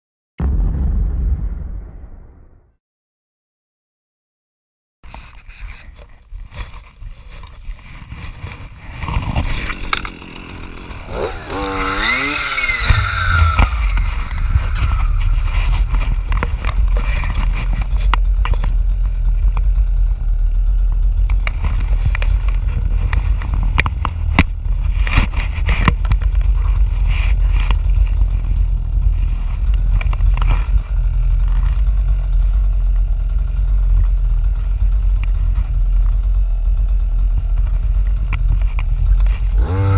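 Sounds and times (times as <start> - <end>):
clearing saw engine revving: 8.5 - 39.9.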